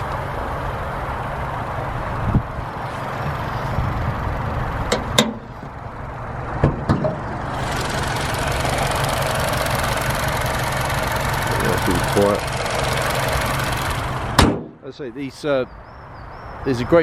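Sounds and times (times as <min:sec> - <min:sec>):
car engine idling: 0:00.0 - 0:15.4
sharp clicks and knocks: 0:04.9 - 0:05.8, 0:06.6 - 0:07.9.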